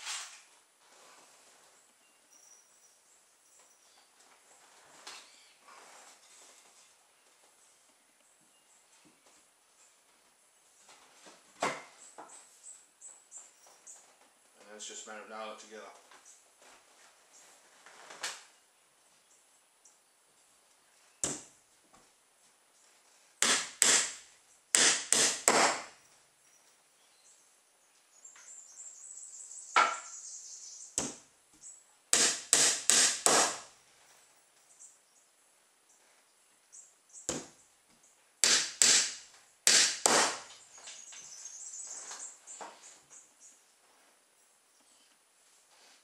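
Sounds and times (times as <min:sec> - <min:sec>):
soft scraping: 0:00.0 - 0:01.9, 0:04.4 - 0:07.8, 0:44.9 - 0:46.0
hammer striking nails into wood: 0:23.4 - 0:25.9, 0:32.1 - 0:33.7, 0:38.4 - 0:40.6.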